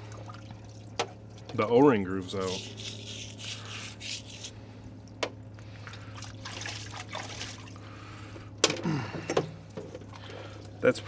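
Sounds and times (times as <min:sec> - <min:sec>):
liquid trickling in parts washer: 0:00.0 - 0:10.9
scrubbing on metal part: 0:02.2 - 0:04.5.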